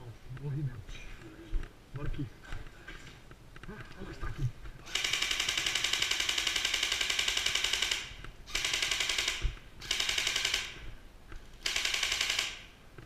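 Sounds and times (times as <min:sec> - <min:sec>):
airsoft gun firing bursts: 0:04.9 - 0:10.9, 0:11.6 - 0:12.8.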